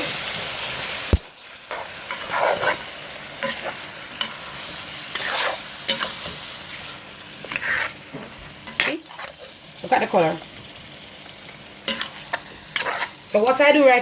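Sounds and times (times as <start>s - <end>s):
chicken sizzling in oil: 0.0s - 14.0s
spoon stirring and scraping: 1.7s - 9.6s, 11.8s - 13.6s.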